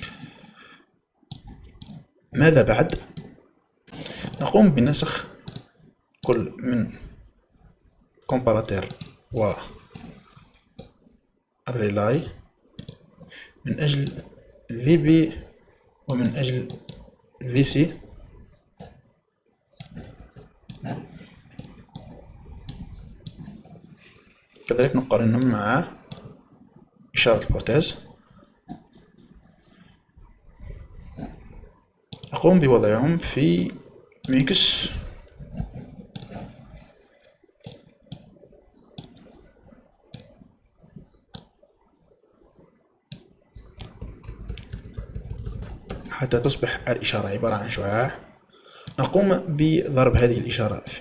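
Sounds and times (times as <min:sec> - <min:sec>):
computer mouse clicks: 0:01.3 - 0:02.1, 0:02.8 - 0:04.5, 0:05.4 - 0:06.4, 0:08.8 - 0:11.0, 0:12.4 - 0:13.2, 0:14.0 - 0:14.3, 0:16.6 - 0:17.1, 0:18.8 - 0:19.0, 0:19.7 - 0:24.7, 0:25.3 - 0:26.4, 0:32.1 - 0:32.4, 0:33.5 - 0:36.9, 0:37.6 - 0:39.4, 0:40.1 - 0:40.4, 0:41.3 - 0:41.5, 0:43.1 - 0:46.2.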